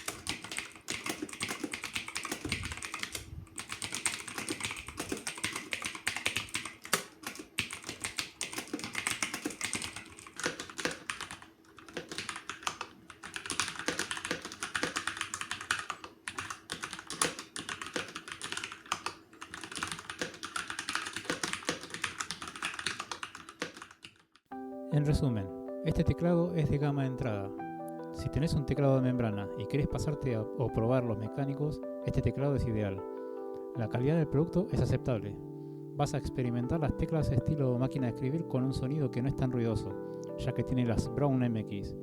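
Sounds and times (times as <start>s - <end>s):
fast typing on mechanical keyboard: 0.0s - 24.4s.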